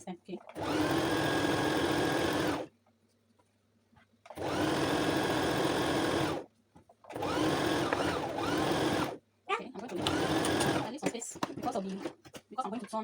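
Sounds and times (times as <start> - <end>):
sewing machine stitching: 0.4 - 2.7, 4.3 - 9.2, 9.8 - 12.4.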